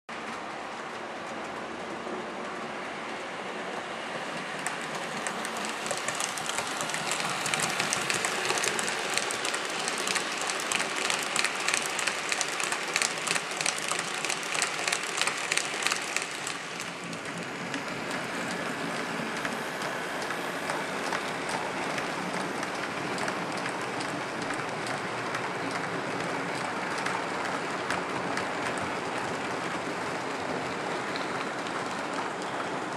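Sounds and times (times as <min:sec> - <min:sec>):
wheels clicking over rail joints: 0:00.2 - 0:32.9
model train wheels and motor hiss: 0:02.4 - 0:32.9.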